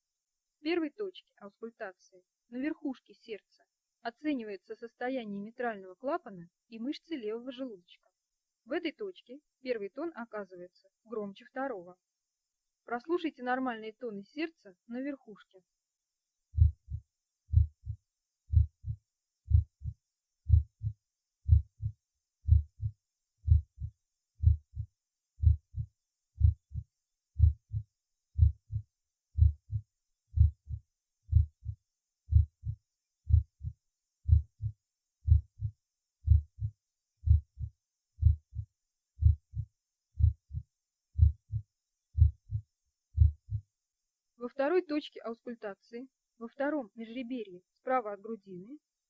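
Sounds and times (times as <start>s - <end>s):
heartbeat: 16.6s - 43.7s.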